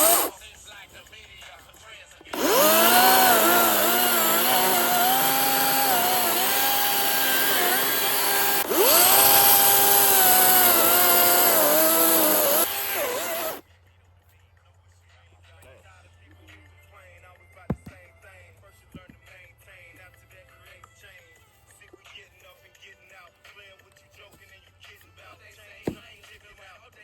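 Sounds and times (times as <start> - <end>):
chainsaw cutting into stump: 0.0 - 0.4, 2.3 - 13.6.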